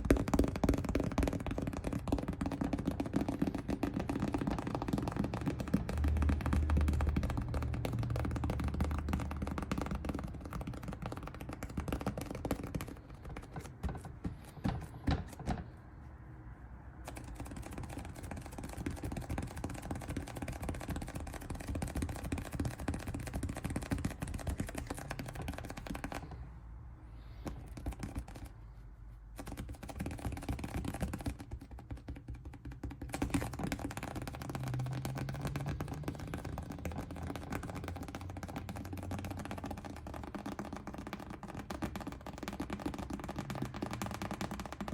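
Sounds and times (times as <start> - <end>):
rapid clicks and crackle: 0.0 - 14.0, 29.4 - 44.9.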